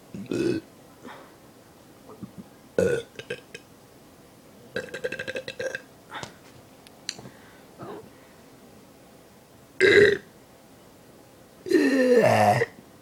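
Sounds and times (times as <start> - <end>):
man burping: 0.2 - 0.6, 2.8 - 3.6, 4.8 - 5.8, 9.8 - 10.2, 11.7 - 12.8.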